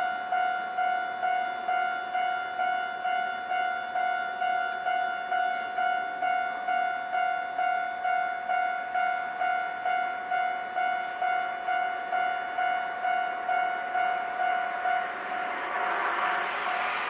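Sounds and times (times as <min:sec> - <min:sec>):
level crossing alarm bell: 0:00.0 - 0:17.0
approaching train rushing: 0:08.8 - 0:17.0.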